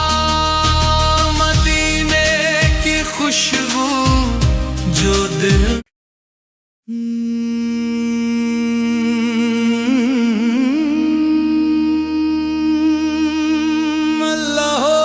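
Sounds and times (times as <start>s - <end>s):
person singing long note: 6.9s - 15.0s.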